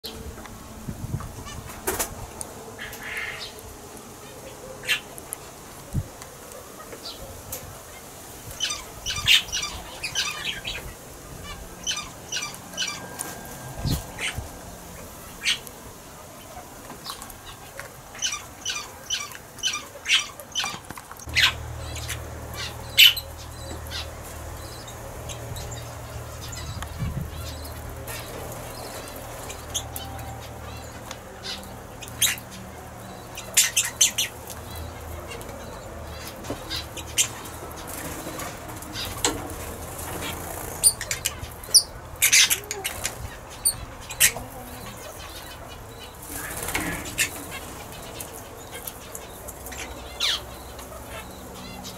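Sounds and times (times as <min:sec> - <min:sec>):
parrots chirping: 0:18.2 - 0:39.3, 0:40.0 - 0:51.9.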